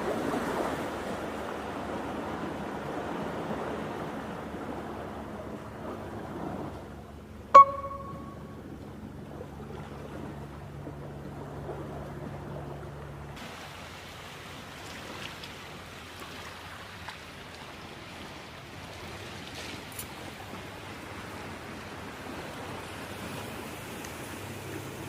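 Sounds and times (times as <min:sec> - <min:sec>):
surf washing on rocky shore: 0:00.0 - 0:06.8
low engine hum: 0:00.0 - 0:25.0.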